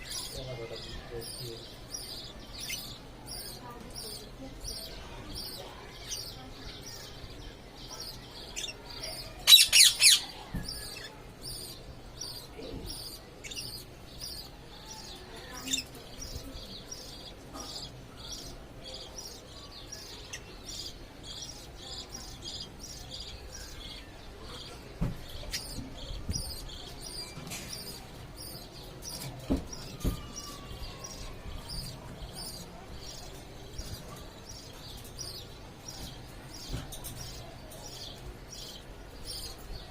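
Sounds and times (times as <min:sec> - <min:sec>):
parrot chirping: 0:09.4 - 0:10.4.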